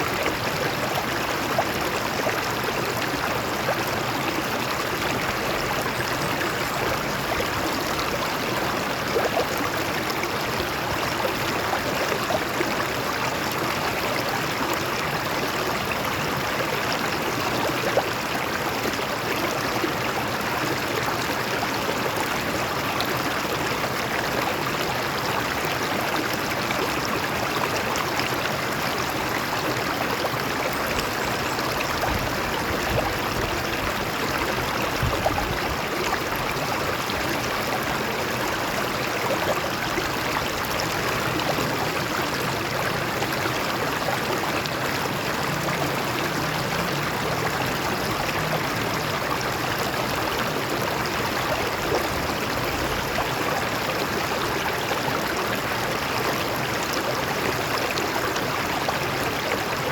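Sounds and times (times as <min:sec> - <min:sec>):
stream flowing over rocks: 0:00.0 - 0:59.9.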